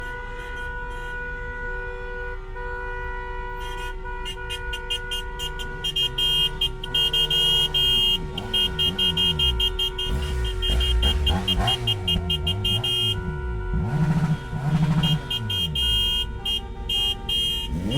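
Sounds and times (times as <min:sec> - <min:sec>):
car horns honking: 0:00.0 - 0:17.9
engines revving: 0:05.6 - 0:17.9.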